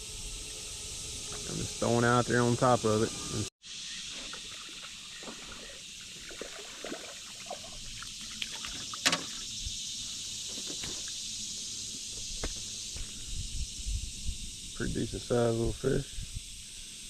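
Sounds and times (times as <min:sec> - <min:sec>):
swamp insects hissing: 0:00.0 - 0:17.0
water trickling: 0:04.1 - 0:09.5.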